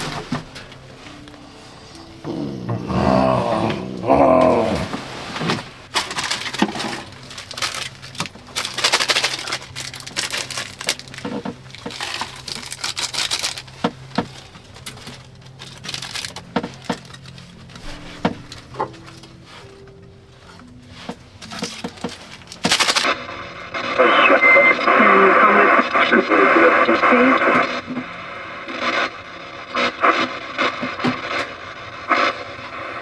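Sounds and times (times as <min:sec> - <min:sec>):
rustling and crinkling: 0:00.0 - 0:23.3.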